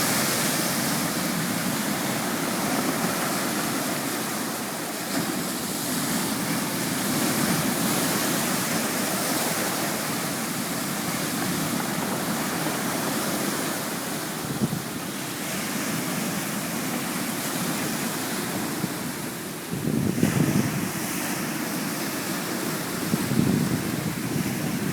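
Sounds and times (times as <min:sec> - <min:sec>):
sea surf washing on shore: 0:00.0 - 0:24.9
wind buffeting microphone: 0:19.7 - 0:21.4, 0:22.6 - 0:24.9.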